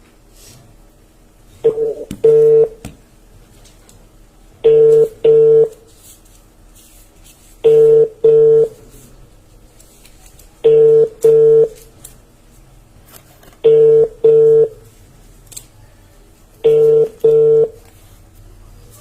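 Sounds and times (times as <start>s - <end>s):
phone ringback tone: 1.6s - 2.8s, 4.6s - 5.8s, 7.6s - 8.8s, 10.6s - 11.8s, 13.6s - 14.8s, 16.6s - 17.8s.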